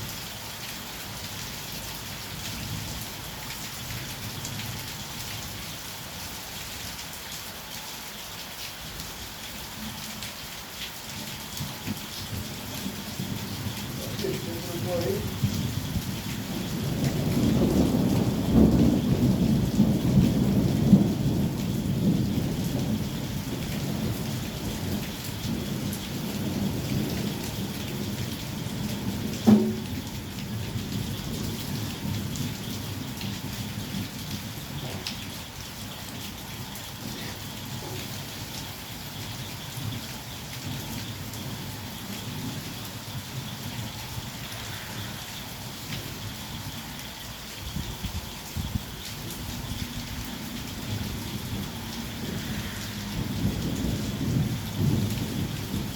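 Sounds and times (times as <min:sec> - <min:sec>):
heavy rain falling: 0:00.0 - 0:55.9
low rumble of thunder: 0:11.2 - 0:55.9
short sharp thump: 0:29.5 - 0:29.9.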